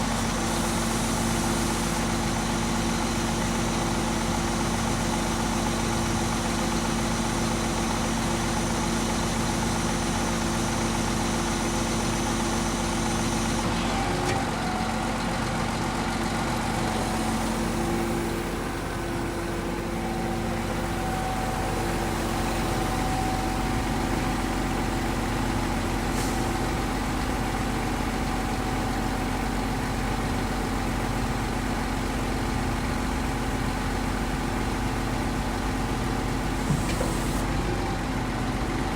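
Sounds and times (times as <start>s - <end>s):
pump engine running: 0.0s - 38.9s.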